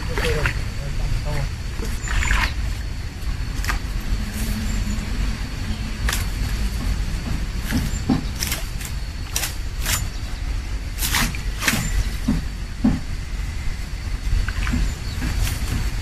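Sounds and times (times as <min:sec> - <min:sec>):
splashing in water: 0:00.0 - 0:04.7, 0:14.3 - 0:16.0
steady low rumble: 0:00.0 - 0:16.0
sucking footsteps in mud: 0:01.4 - 0:04.7.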